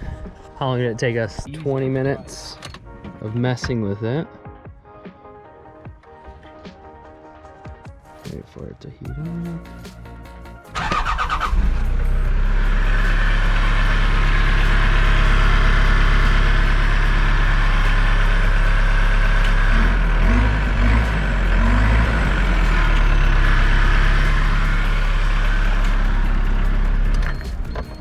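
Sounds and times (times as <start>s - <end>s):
diesel engine running: 10.8s - 28.0s.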